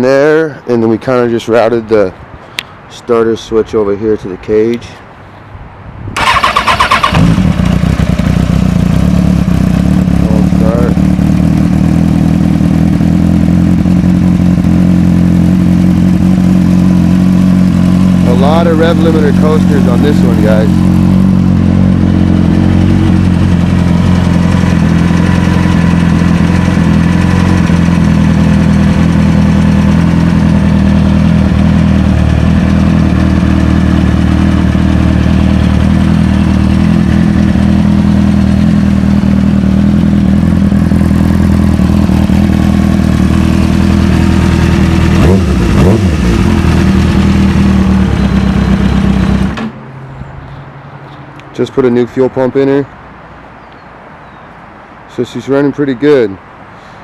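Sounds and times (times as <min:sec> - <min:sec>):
motorcycle engine idling: 0:06.2 - 0:50.8.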